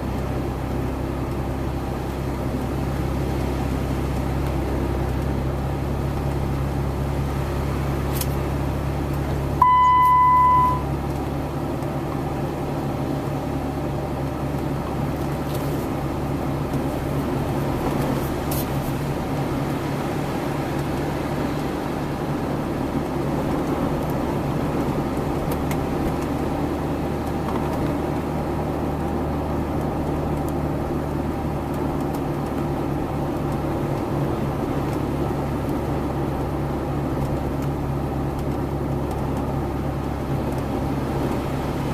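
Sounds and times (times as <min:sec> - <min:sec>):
electronic beep: 0:09.6 - 0:10.9.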